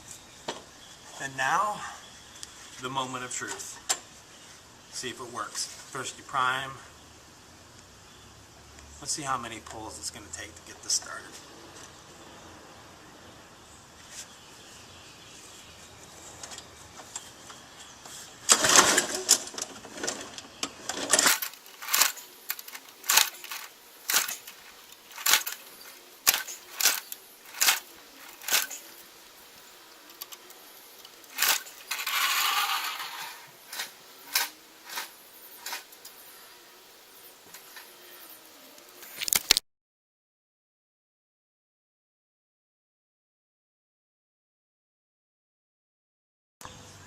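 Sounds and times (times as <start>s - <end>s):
recoil starter pull: 18.5s - 25.6s
sharp clicks: 18.5s - 28.9s.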